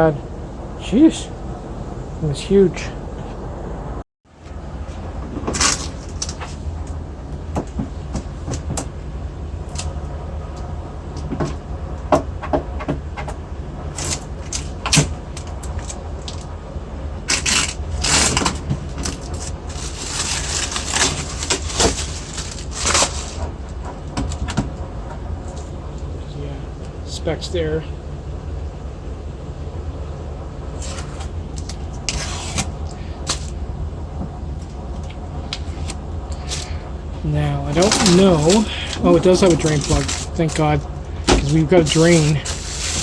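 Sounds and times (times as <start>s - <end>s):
steady low hum: 0.0s - 43.0s
packaging scrapes and rustles: 17.3s - 23.5s, 30.8s - 33.6s, 37.7s - 43.0s.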